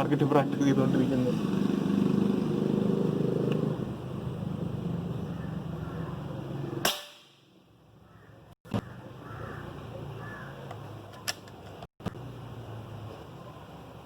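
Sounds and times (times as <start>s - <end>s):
air rifle shot: 6.8s - 7.5s.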